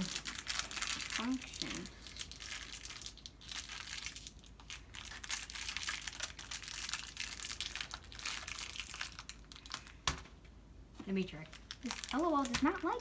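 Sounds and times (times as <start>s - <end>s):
plastic packaging crinkling: 0.0s - 10.4s, 11.4s - 13.0s.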